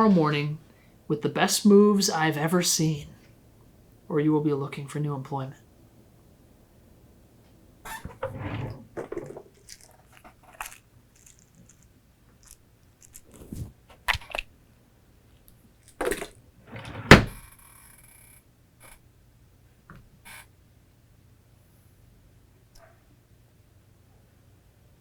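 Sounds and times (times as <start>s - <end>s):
rustling: 8.0s - 13.8s.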